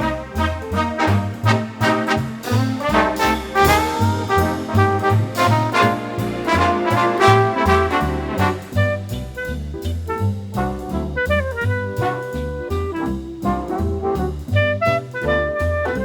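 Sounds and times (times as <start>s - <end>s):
swing jazz with brass horns: 0.0s - 16.0s
walking bass: 0.0s - 16.0s.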